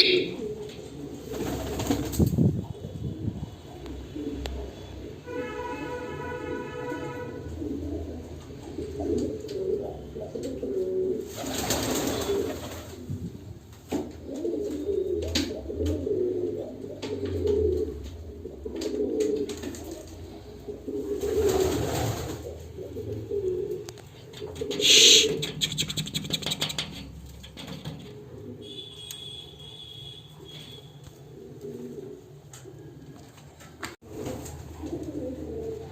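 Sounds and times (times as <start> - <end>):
pigeons cooing: 0.0 - 5.4, 7.2 - 29.0, 30.4 - 35.9
short rushes of noise: 24.7 - 27.6.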